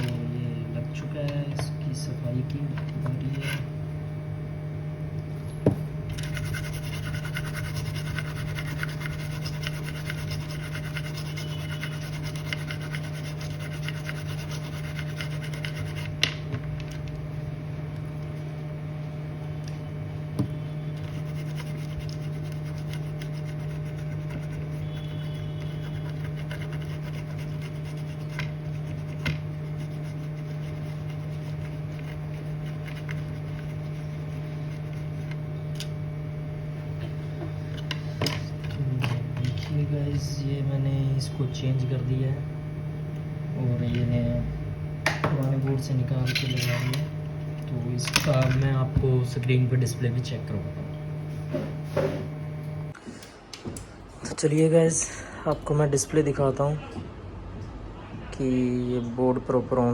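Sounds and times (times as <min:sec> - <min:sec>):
steady low hum: 0:00.0 - 0:59.9
brush scrubbing circuit board: 0:06.1 - 0:16.2, 0:20.9 - 0:35.6.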